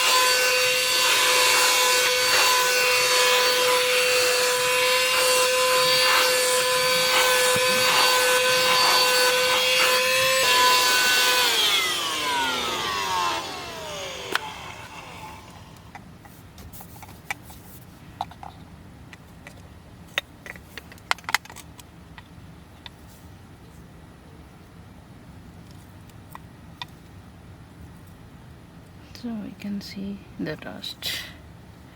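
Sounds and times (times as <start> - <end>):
handheld vacuum cleaner whining: 0.0 - 15.9
plastic parts clicking: 18.2 - 21.9.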